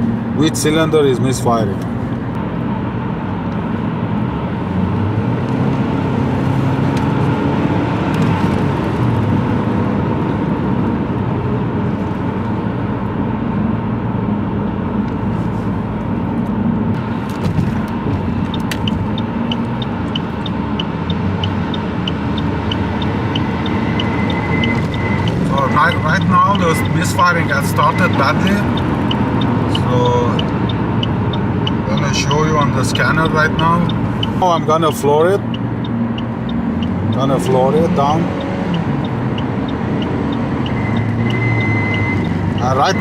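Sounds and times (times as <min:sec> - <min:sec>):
car engine and road noise: 0:00.0 - 0:43.0
light ticking: 0:18.2 - 0:43.0.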